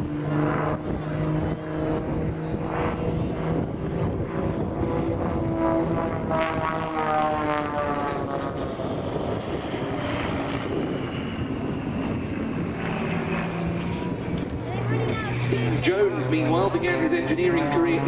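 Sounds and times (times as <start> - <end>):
aircraft engine and propeller drone: 0.0 - 18.0.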